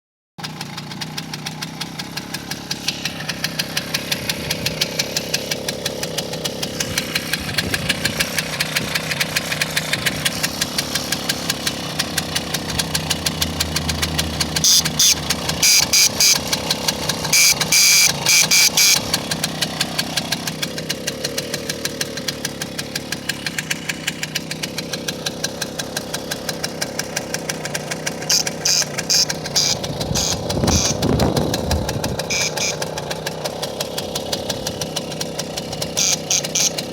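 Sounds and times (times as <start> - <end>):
moped engine idling: 0.4 - 36.9
electric horn blasts: 14.5 - 16.6, 17.2 - 19.1, 28.3 - 31.1, 32.3 - 32.9, 36.0 - 36.8.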